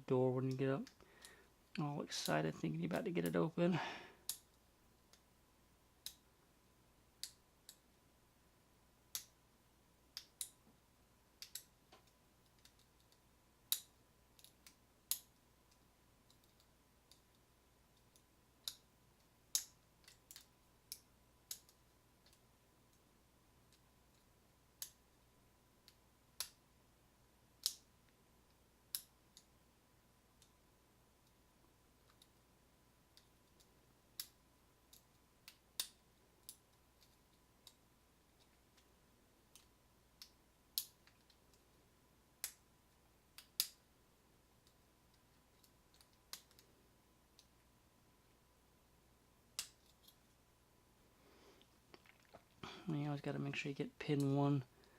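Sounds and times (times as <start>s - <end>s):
faint steady hum: 0.0s - 54.9s
lock pick clicking against pins: 11.4s - 17.4s, 18.0s - 23.0s, 27.6s - 27.9s, 28.9s - 29.5s, 43.3s - 43.8s.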